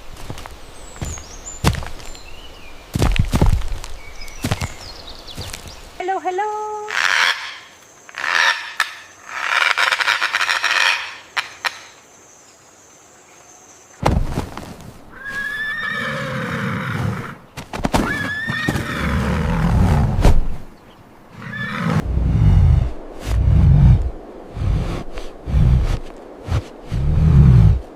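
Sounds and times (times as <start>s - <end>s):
horse rumbling: 14.1s - 20.6s, 21.3s - 27.9s
horse neighing: 15.2s - 17.4s, 18.0s - 19.8s, 21.4s - 22.0s
horse blowing breath: 21.4s - 27.8s.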